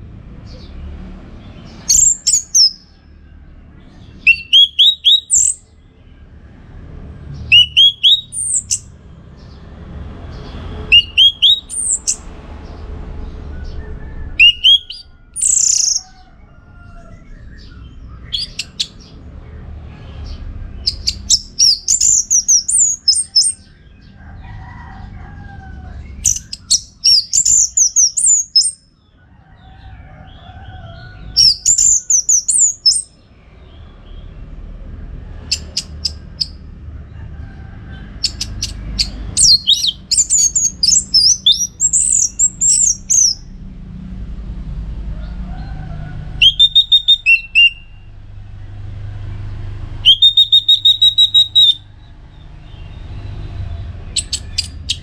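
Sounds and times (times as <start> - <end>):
thrush singing: 4.0 - 5.7, 7.4 - 8.9, 10.6 - 12.8, 13.9 - 16.0, 17.7 - 19.1, 39.4 - 43.4, 46.3 - 48.1, 50.0 - 51.8.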